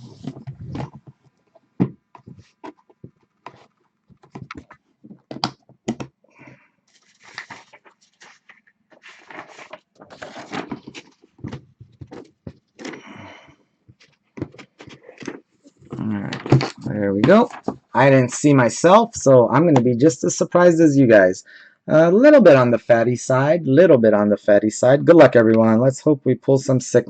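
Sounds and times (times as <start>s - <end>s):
wrapper crinkling and tearing: 6.9s - 11.2s.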